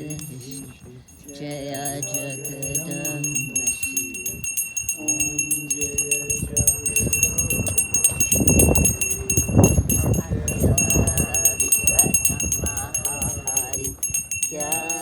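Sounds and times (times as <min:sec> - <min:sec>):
bell ringing rapidly: 0:00.0 - 0:15.0
chanted devotional hymn: 0:00.0 - 0:15.0
wind rumbling on microphone: 0:03.4 - 0:14.6.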